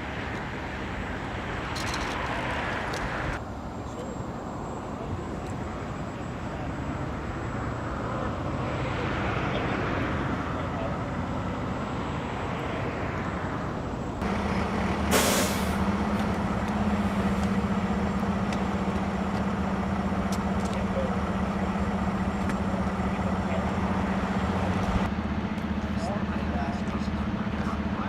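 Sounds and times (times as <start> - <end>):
vehicle engine droning: 0.0 - 28.0
short burst of hiss: 15.1 - 15.8.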